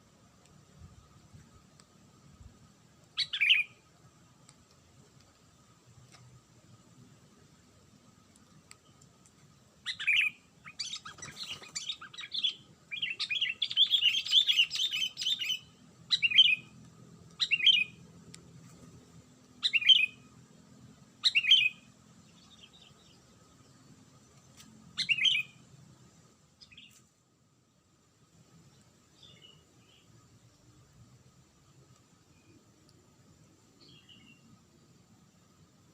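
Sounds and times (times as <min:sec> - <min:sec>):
bird single chirps: 0:09.8 - 0:16.7, 0:24.4 - 0:25.6.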